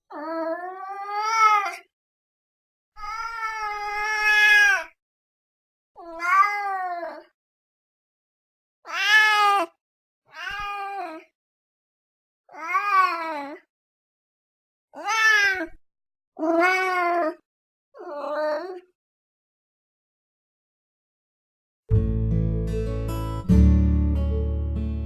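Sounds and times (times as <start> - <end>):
cat meowing: 3.0 - 4.9, 6.0 - 7.3, 8.9 - 9.7, 10.3 - 11.2, 12.5 - 13.6, 15.0 - 15.8, 16.4 - 17.4.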